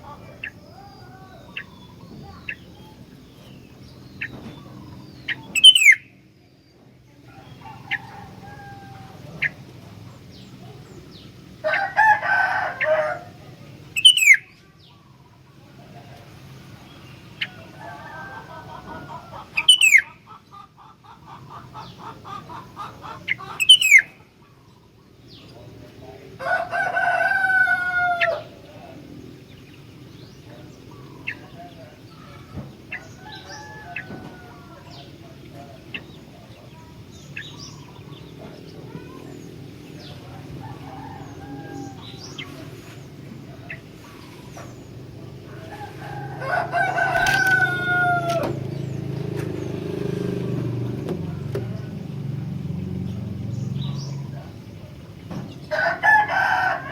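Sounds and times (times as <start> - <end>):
rooster crowing: 0.0 - 1.6, 7.3 - 9.5, 11.6 - 13.4, 17.5 - 20.0, 26.4 - 28.6, 32.2 - 35.1, 40.4 - 42.6, 45.5 - 48.7, 55.7 - 56.9
bird chirps: 0.0 - 11.4, 13.9 - 15.6, 19.3 - 25.6, 34.9 - 40.2
bird whistled calls: 4.2 - 6.2, 14.0 - 14.6, 19.6 - 20.2, 23.6 - 24.2.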